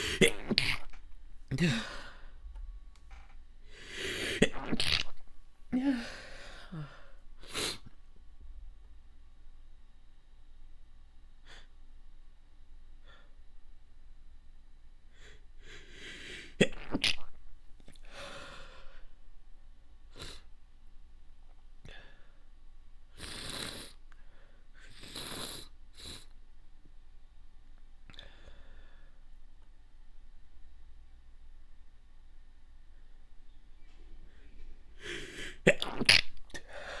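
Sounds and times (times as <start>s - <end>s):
person stifling a sneeze: 0.0s - 2.0s, 4.2s - 5.2s, 16.6s - 17.4s, 35.1s - 36.4s.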